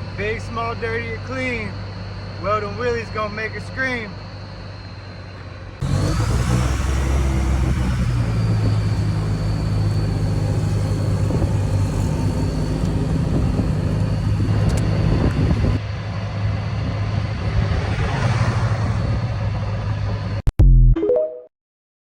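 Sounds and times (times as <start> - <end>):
golf cart engine running: 5.8 - 15.8.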